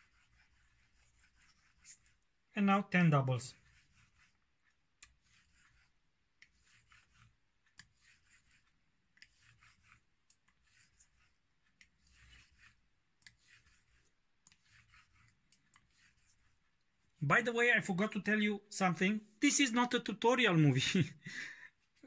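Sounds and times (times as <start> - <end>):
razor blade scraping on whetstone: 5.2 - 10.0, 12.0 - 16.5.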